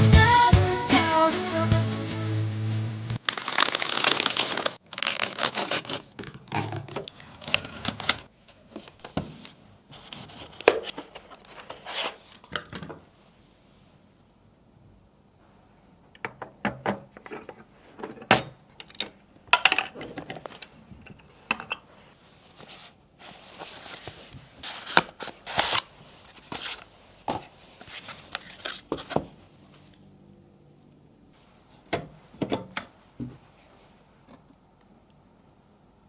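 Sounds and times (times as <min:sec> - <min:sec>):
packaging rustling: 0:03.2 - 0:06.1, 0:09.0 - 0:13.1, 0:19.7 - 0:30.0
computer parts clicking and knocking: 0:16.2 - 0:21.9.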